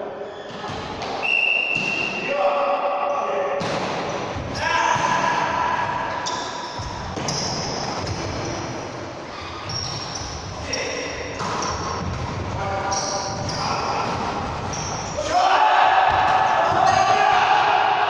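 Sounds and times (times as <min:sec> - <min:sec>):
players' voices: 0:00.0 - 0:09.6, 0:10.4 - 0:18.0
sneakers squeaking on court: 0:00.2 - 0:02.1, 0:06.0 - 0:15.2.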